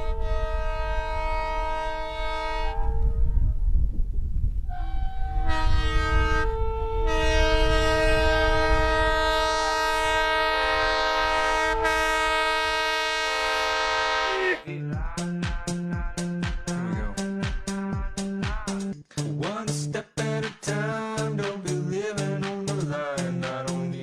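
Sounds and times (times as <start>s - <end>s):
locomotive air horn: 0.0s - 3.5s, 4.7s - 14.7s
low rumble of passing train: 0.0s - 14.6s
music with a beat: 14.8s - 24.0s.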